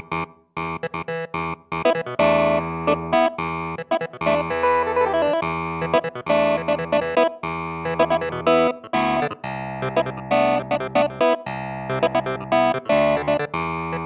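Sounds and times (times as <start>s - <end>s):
keyboard chords: 0.0s - 14.0s.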